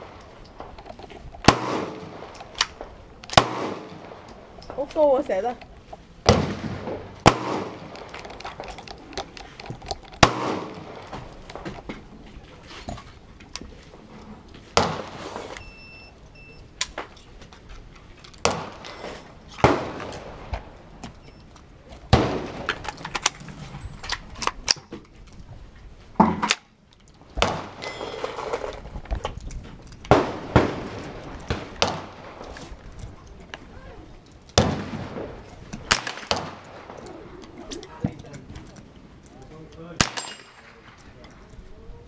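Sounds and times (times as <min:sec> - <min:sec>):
handgun shots echoing: 0:01.4 - 0:02.7, 0:03.3 - 0:04.3, 0:06.3 - 0:08.2, 0:10.2 - 0:11.4, 0:40.0 - 0:40.9.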